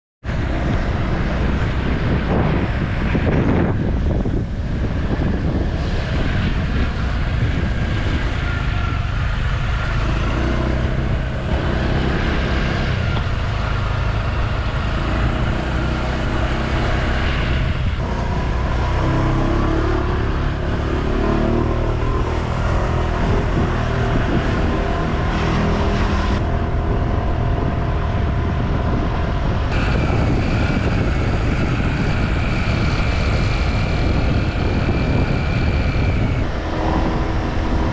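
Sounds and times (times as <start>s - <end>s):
wind buffeting microphone: 0.2s - 37.9s
motor scooter engine revving: 9.4s - 27.0s, 29.7s - 37.9s.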